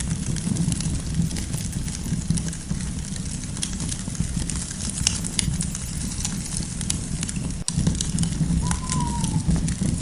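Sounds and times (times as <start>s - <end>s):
low fire rumble: 6.6s - 10.0s.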